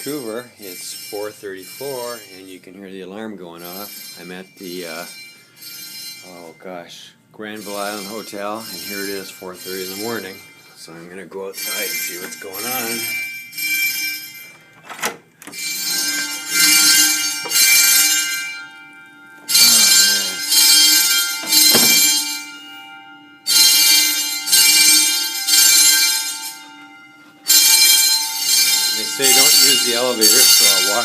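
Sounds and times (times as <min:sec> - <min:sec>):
fire alarm bell ringing: 0:00.0 - 0:31.0
knock: 0:21.5 - 0:22.0.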